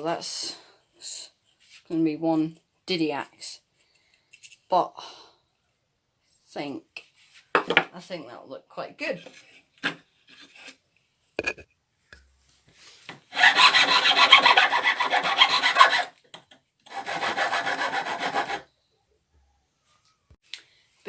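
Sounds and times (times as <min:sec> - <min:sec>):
hand file rasping on wood: 0:13.3 - 0:16.1, 0:16.9 - 0:18.7.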